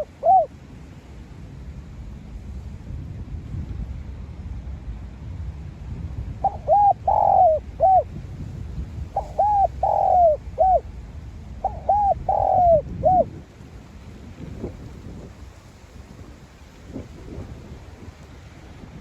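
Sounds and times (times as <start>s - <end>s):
dove cooing: 0.0s - 0.5s, 6.4s - 8.1s, 9.1s - 10.9s, 11.6s - 13.3s.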